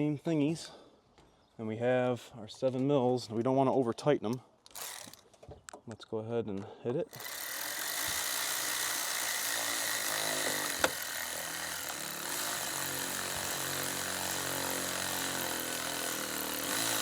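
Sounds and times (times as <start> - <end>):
cordless power driver running: 4.7 - 5.2, 7.1 - 17.0.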